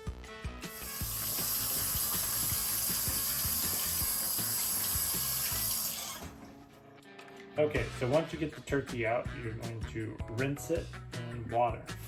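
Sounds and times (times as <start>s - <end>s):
water running from a tap: 0.7s - 6.4s.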